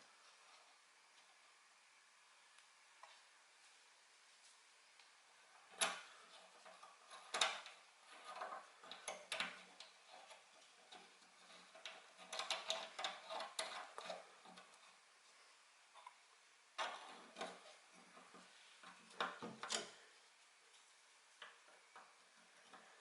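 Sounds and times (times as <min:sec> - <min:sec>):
small hard parts clicking: 0:05.6 - 0:14.9.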